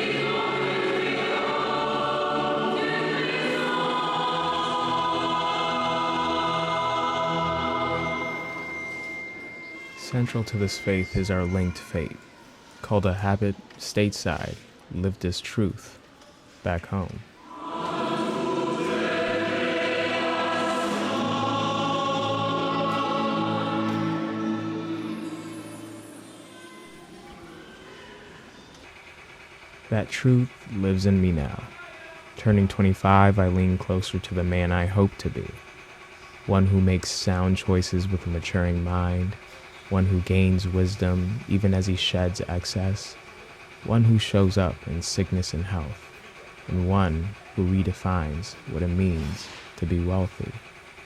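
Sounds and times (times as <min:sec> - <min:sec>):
gospel choir singing: 0:00.0 - 0:11.7, 0:17.3 - 0:29.0.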